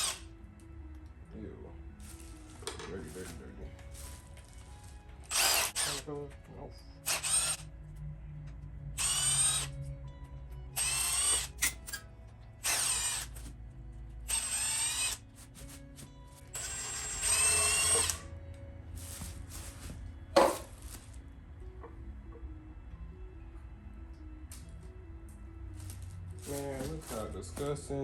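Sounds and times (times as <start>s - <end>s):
impact wrench whirring: 0.0s - 0.3s, 5.3s - 6.1s, 7.0s - 7.7s, 9.0s - 9.8s, 10.8s - 12.0s, 12.6s - 13.5s, 14.3s - 15.2s, 16.5s - 18.3s.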